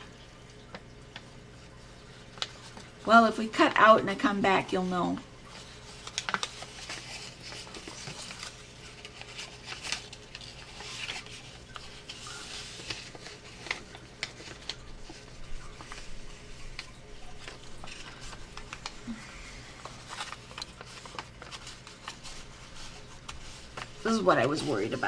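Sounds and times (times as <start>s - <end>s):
paper rustling and crinkling: 0.0s - 25.0s
taps and clicks of paper folds: 5.5s - 19.2s, 19.8s - 24.8s.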